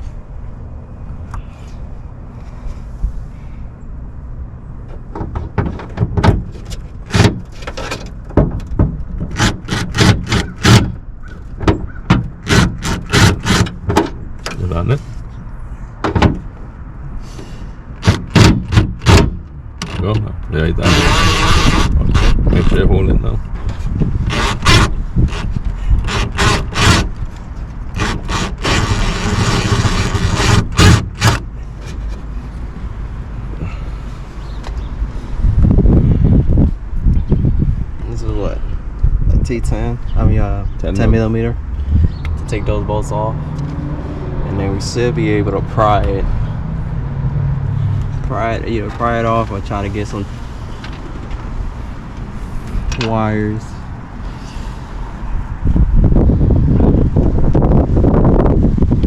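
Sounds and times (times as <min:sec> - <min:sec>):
plastic trim scraping and knocking: 0:05.2 - 0:14.6, 0:18.0 - 0:22.8, 0:23.6 - 0:32.2
wind rumble on microphone: 0:18.3 - 0:31.4, 0:34.4 - 0:59.0.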